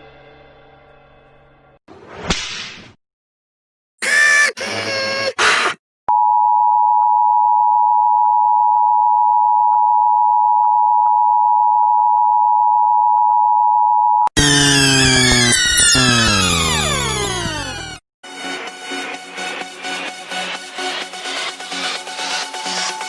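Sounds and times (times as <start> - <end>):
buzzy synthetic tone sliding down: 14.4 - 18.0
robotic electronic bursts: 14.4 - 18.0
steady electronic alert tone: 14.4 - 18.0.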